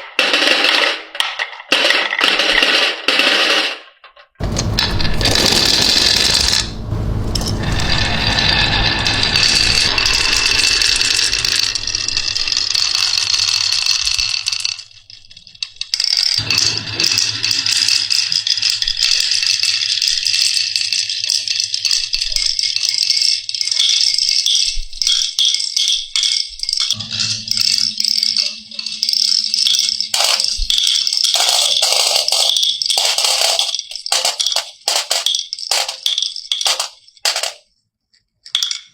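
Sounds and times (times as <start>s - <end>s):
marbles rattling down a track: 10.7s - 16.4s, 17.2s - 27.0s, 28.3s - 37.6s.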